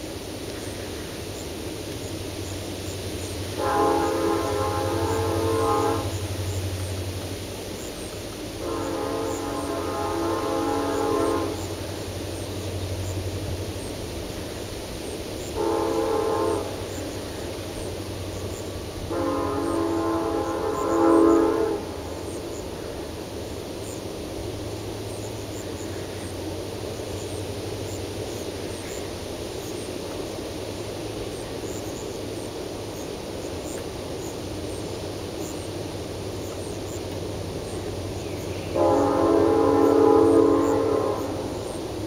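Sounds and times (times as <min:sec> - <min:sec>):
passing train rumble: 0:00.0 - 0:42.0
train horn chord: 0:03.5 - 0:06.7, 0:08.6 - 0:12.0, 0:15.6 - 0:17.4, 0:18.9 - 0:22.9, 0:38.6 - 0:41.8.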